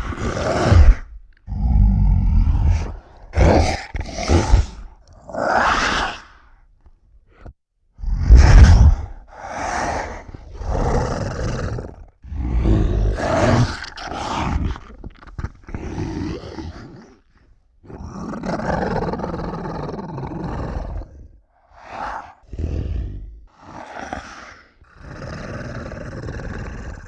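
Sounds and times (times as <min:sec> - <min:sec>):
monster roars: 0:00.0 - 0:06.4, 0:08.0 - 0:16.9, 0:18.0 - 0:27.0.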